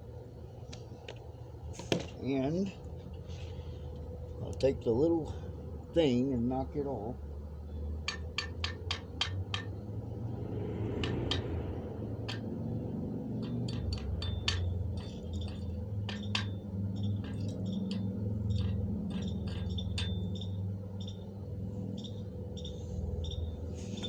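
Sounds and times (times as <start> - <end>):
steady low hum: 0.0 - 24.0
hand tool tapping metal: 8.0 - 9.8, 11.0 - 11.6, 12.2 - 12.6, 13.3 - 21.2
ringing metallic clinks: 13.4 - 24.0.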